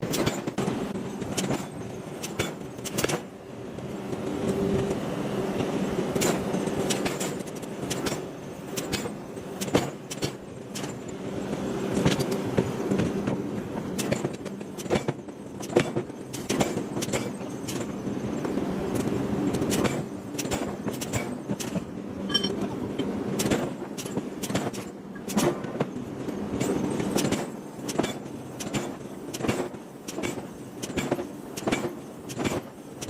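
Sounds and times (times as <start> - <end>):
metal clanks and knocks: 22.2 - 23.1.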